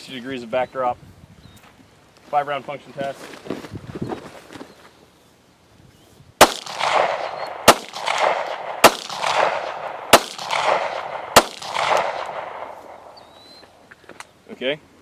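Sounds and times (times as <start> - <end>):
pistol shots echoing: 6.4 - 13.2.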